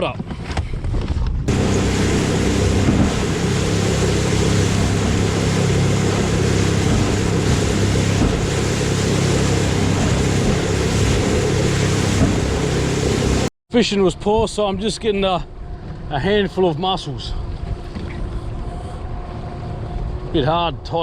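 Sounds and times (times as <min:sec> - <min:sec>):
rush of wind and water: 0:00.0 - 0:21.0
boat motor running: 0:01.5 - 0:13.5.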